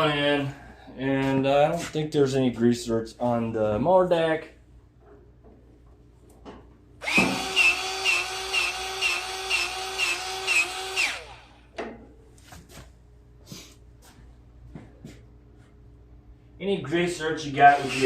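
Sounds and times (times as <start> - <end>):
electric grease gun whining: 7.0 - 11.6, 17.6 - 18.0.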